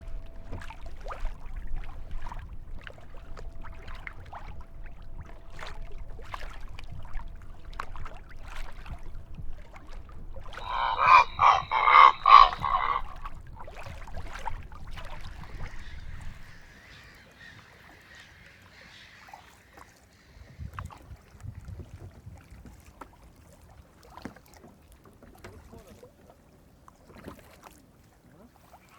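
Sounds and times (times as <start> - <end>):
rapid honking calls: 10.5 - 13.4
short bird calls: 10.6 - 13.3.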